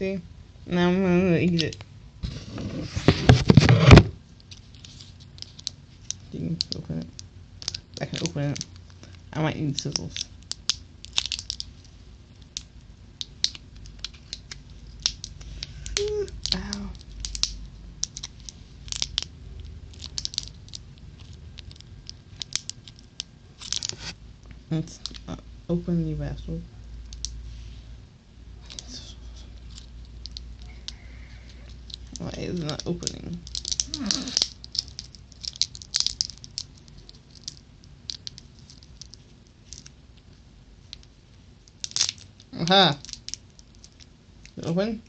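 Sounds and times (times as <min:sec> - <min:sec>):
plastic packaging clicks: 0:03.8 - 0:09.0, 0:09.7 - 0:19.3, 0:19.9 - 0:24.0, 0:31.7 - 0:39.9, 0:40.9 - 0:44.6.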